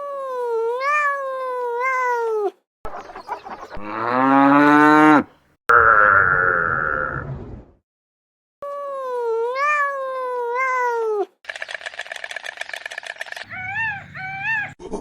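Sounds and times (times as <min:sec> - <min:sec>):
rough animal call: 0:12.7 - 0:15.0
cat meowing: 0:13.5 - 0:14.8.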